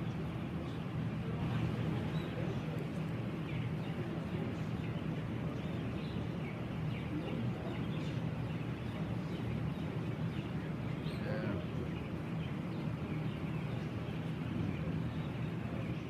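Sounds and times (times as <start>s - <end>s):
low ventilation hum: 0.0s - 16.0s.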